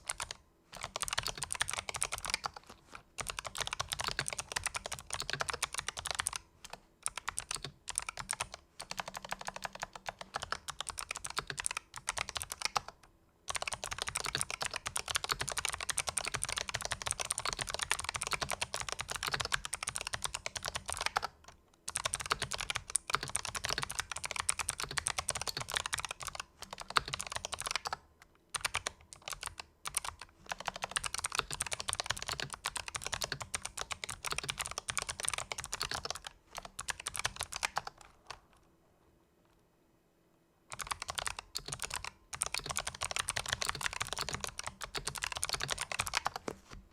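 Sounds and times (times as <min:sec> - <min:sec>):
fast typing key clicks: 0:40.7 - 0:46.4.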